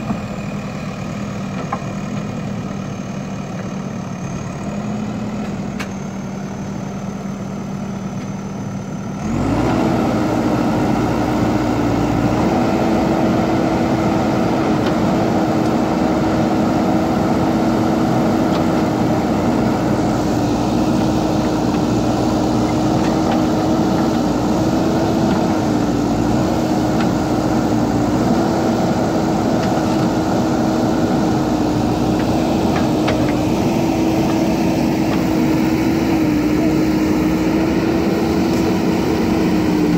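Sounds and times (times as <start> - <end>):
diesel engine idling and revving: 0.0 - 39.9.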